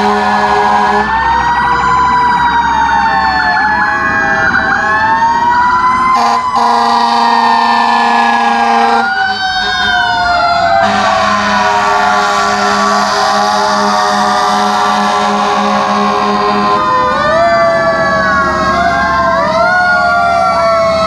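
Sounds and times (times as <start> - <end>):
long horn blasts: 0.0 - 1.2, 6.1 - 10.0, 10.8 - 17.2
fire truck sirens wailing: 0.0 - 21.0.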